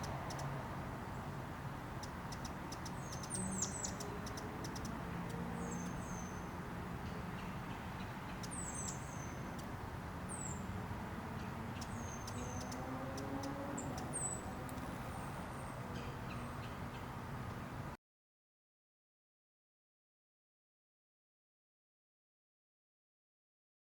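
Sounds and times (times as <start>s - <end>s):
hummingbirds chirping: 0.0s - 17.6s.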